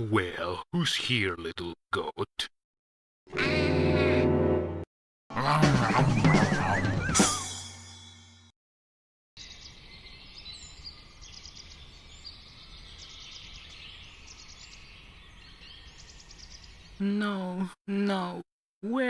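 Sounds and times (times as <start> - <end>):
small birds chirping: 9.4 - 17.7.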